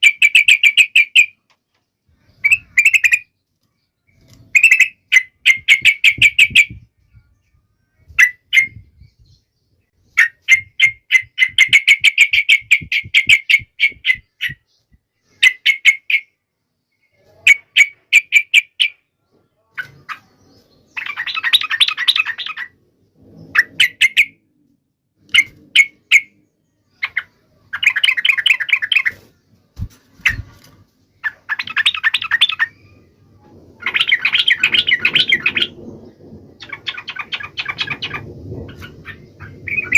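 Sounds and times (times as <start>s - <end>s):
bulbul singing: 0.0s - 1.5s, 2.1s - 22.8s, 31.1s - 39.9s.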